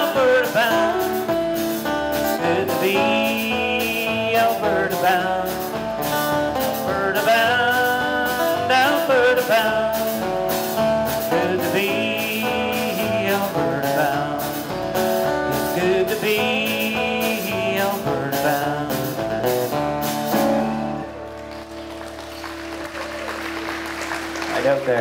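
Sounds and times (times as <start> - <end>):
live country band playing: 0.0 - 25.0
light applause: 20.7 - 25.0.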